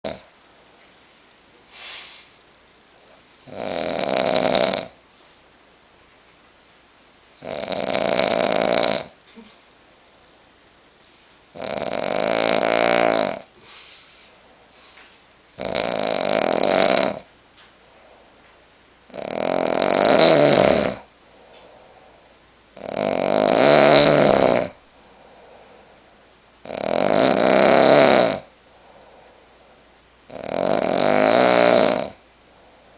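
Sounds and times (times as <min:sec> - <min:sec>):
person snoring loudly: 0:00.0 - 0:00.3, 0:03.4 - 0:05.0, 0:07.4 - 0:09.2, 0:11.5 - 0:13.5, 0:15.5 - 0:17.3, 0:19.1 - 0:21.1, 0:22.8 - 0:24.8, 0:26.6 - 0:28.5, 0:30.3 - 0:32.2.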